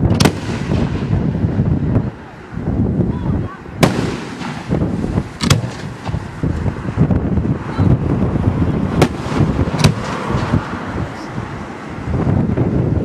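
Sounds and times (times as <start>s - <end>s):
fireworks bursting with bangs: 0.0s - 1.5s, 3.8s - 6.8s, 8.9s - 10.6s
rumble and crackle of fireworks: 0.0s - 11.7s.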